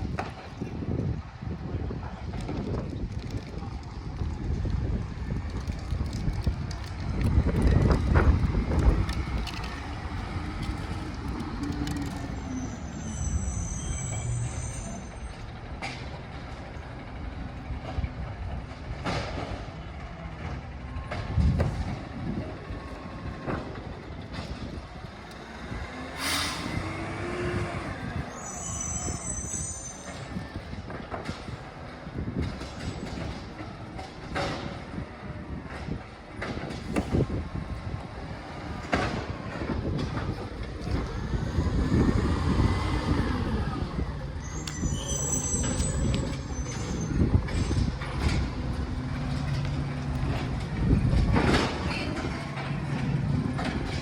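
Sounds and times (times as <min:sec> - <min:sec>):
mechanical rumble: 0:00.0 - 0:28.5, 0:29.1 - 0:54.0
truck engine revving: 0:05.2 - 0:28.6, 0:36.5 - 0:54.0
high-pitched squeal: 0:08.8 - 0:15.6, 0:25.5 - 0:30.7, 0:40.7 - 0:49.5.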